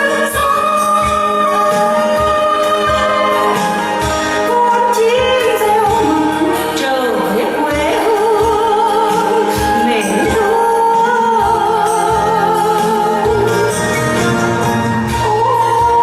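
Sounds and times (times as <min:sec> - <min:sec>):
backing music with low beat: 0:00.0 - 0:16.0
person singing with vibrato: 0:00.0 - 0:16.0.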